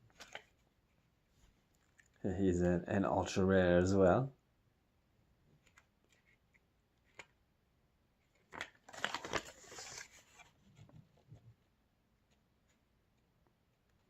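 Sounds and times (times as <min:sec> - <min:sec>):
paper rustling and crinkling: 0:08.3 - 0:11.4.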